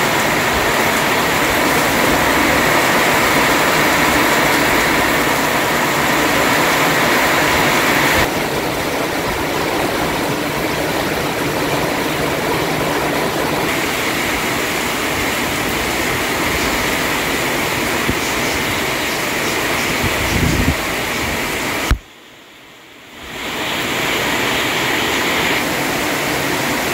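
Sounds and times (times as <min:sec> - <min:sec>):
heavy rain: 0:00.0 - 0:26.9.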